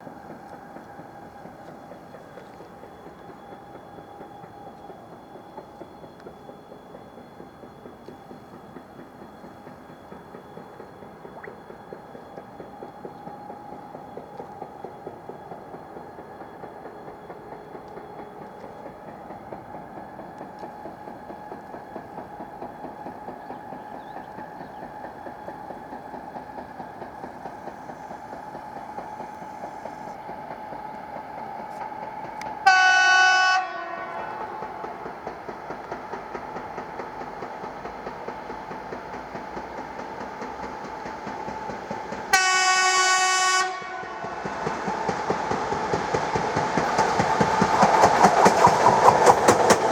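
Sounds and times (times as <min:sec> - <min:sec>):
train wheels knocking on rail joints: 0:00.0 - 0:49.9
train horn blasts: 0:32.6 - 0:34.6, 0:42.3 - 0:44.4.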